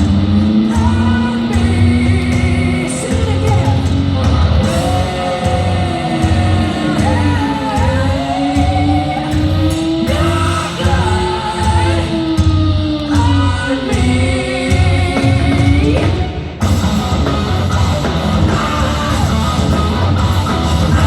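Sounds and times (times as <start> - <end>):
bass: 0.0 - 21.0
electric guitar: 0.0 - 21.0
woman singing: 0.5 - 16.4
low drum pulse: 14.0 - 21.0.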